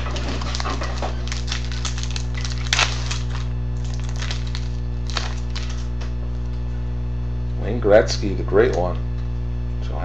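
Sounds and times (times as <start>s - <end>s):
wrapper crinkling and tearing: 0.0s - 6.0s
wrapper snapping: 0.0s - 6.1s
low electrical hum: 0.0s - 10.0s.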